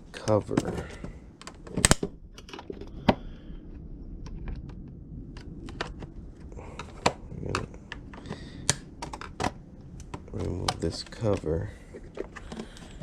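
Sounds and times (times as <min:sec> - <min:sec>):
plastic clicks and snaps: 0:06.8 - 0:11.5.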